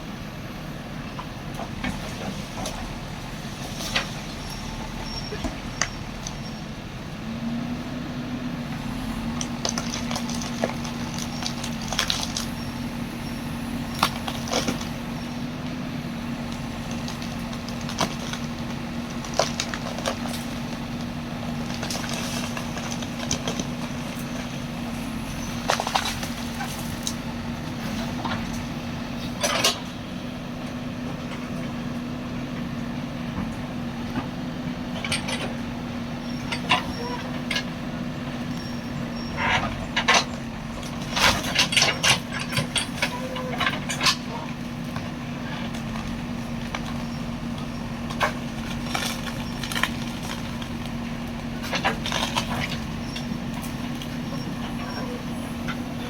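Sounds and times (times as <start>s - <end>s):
excavator engine running: 0.0s - 56.0s
wood cracking: 9.3s - 12.6s, 16.4s - 27.3s, 39.8s - 56.0s.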